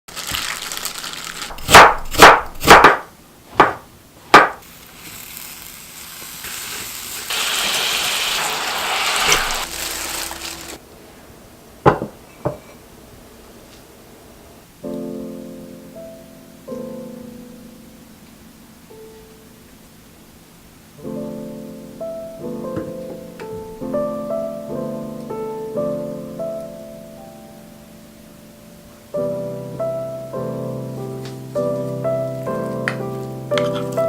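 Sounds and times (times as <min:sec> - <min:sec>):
loud sharp knocks: 0:01.7 - 0:04.6
steady hiss: 0:03.0 - 0:11.6, 0:13.0 - 0:34.0
soft piano music: 0:14.6 - 0:34.0.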